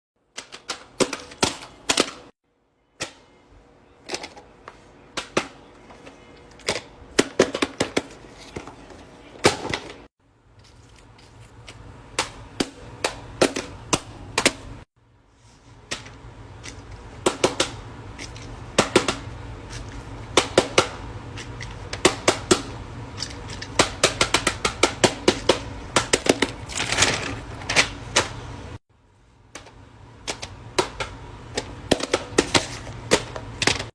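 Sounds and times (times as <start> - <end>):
low steady hum: 2.5 - 33.9.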